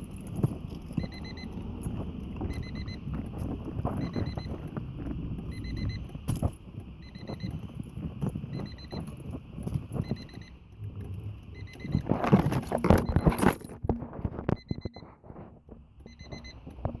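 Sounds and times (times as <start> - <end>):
car warning chime beeping: 0.4 - 12.2, 14.5 - 15.1, 16.0 - 17.0.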